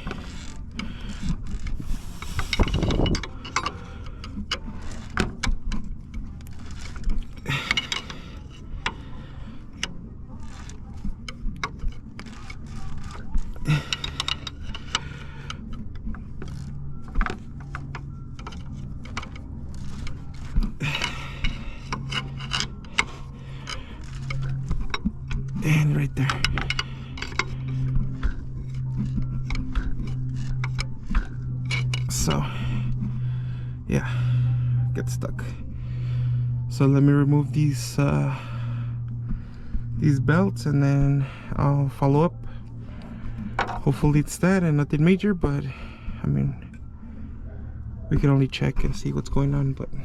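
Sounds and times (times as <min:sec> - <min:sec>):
hand tool clicking and scraping on metal: 0:00.0 - 0:33.2.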